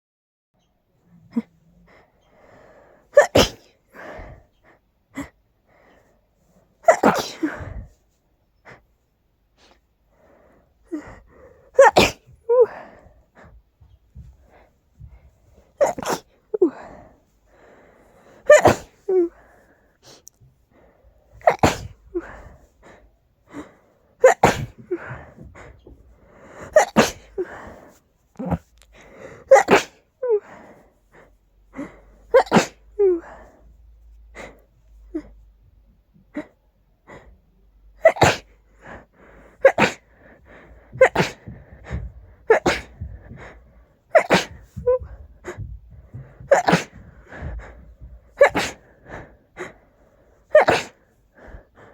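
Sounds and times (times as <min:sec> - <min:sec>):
person sneezing: 0:03.2 - 0:04.4, 0:06.8 - 0:08.0, 0:10.9 - 0:13.0, 0:15.8 - 0:17.0, 0:18.5 - 0:19.4, 0:21.4 - 0:22.7, 0:23.5 - 0:25.9, 0:26.6 - 0:30.6, 0:31.8 - 0:33.5, 0:38.0 - 0:39.0, 0:39.6 - 0:43.5, 0:44.1 - 0:49.7, 0:50.4 - 0:51.6.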